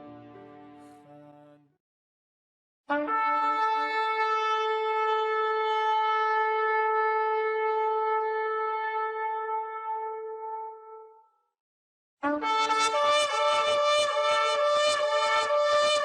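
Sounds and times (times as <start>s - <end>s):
shofar blast: 2.9s - 11.0s, 12.2s - 16.0s.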